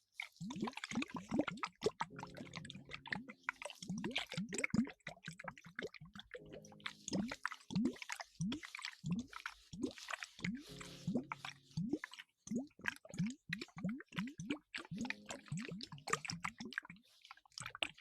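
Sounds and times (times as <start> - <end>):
lather squishing and popping: 0.0 - 18.0.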